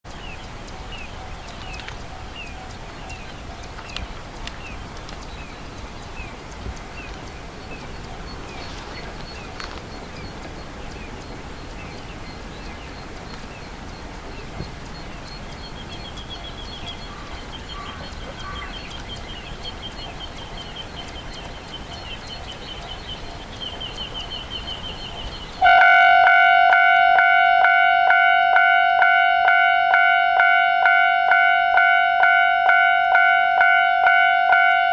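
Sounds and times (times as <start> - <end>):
bird chirping: 0.1 - 26.4
rapid high bird trill: 0.3 - 30.1
level crossing warning bell: 25.1 - 34.9.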